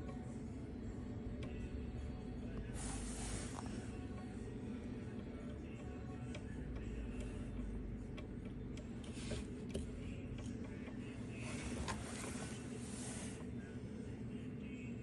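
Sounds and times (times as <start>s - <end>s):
steady low hum: 0.0s - 15.0s
small clicks and scraping: 5.1s - 13.5s.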